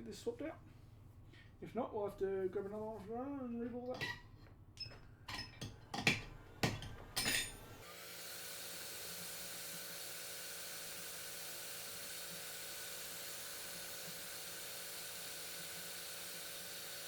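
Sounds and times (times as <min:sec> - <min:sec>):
tools clicking and clinking: 0:04.8 - 0:07.7.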